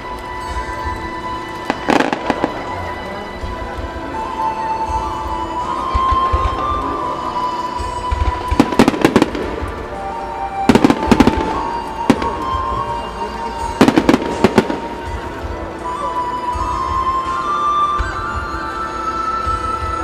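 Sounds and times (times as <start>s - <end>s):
music with long held tone: 0.0s - 20.0s
fireworks bangs: 1.2s - 15.7s.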